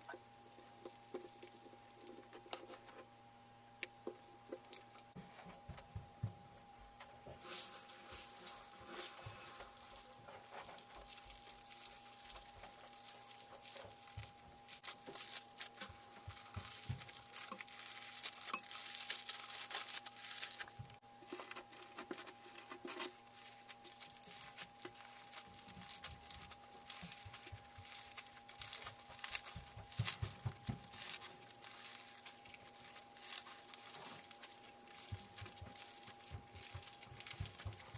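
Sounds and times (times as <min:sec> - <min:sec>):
faint steady hum: 0:00.0 - 0:37.9
slime crackling and popping: 0:10.7 - 0:21.0, 0:22.5 - 0:37.9.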